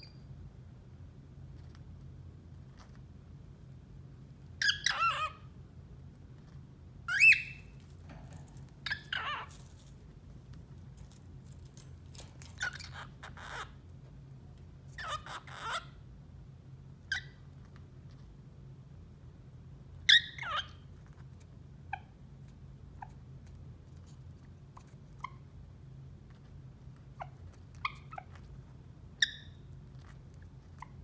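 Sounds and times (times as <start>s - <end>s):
cockatiel chirping: 4.6s - 5.4s, 7.1s - 7.8s, 8.8s - 9.7s, 12.2s - 13.7s, 15.0s - 15.9s, 20.1s - 20.7s, 29.2s - 29.6s.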